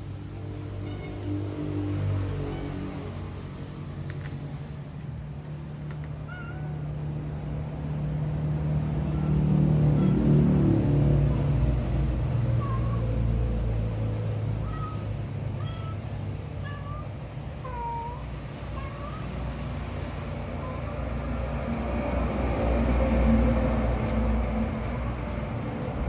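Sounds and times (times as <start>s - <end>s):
cat chirping: 6.2s - 6.8s, 14.6s - 19.3s
steady low rumble: 19.5s - 26.0s.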